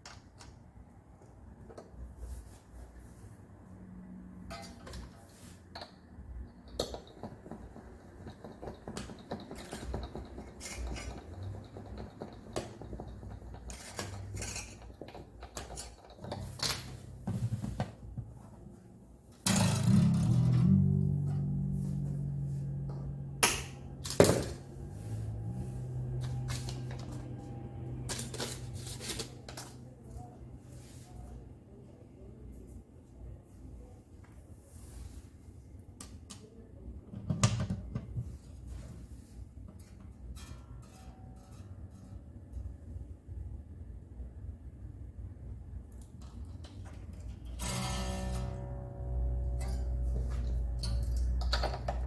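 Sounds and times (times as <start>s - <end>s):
guitar handling clicks and knocks: 6.7s - 18.3s, 19.4s - 27.4s, 46.3s - 52.0s
guitar string plucked and tuned: 19.5s - 28.8s, 47.6s - 52.0s.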